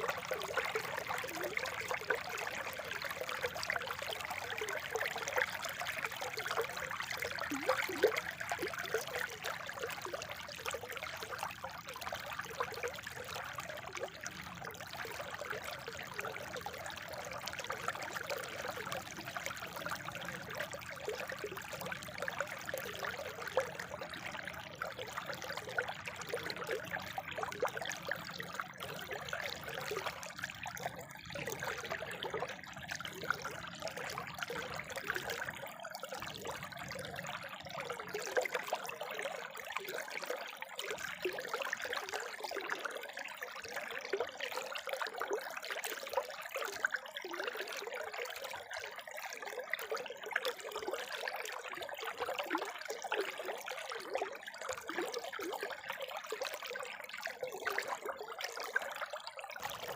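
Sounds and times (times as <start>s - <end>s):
spring water trickling: 0.0s - 11.5s.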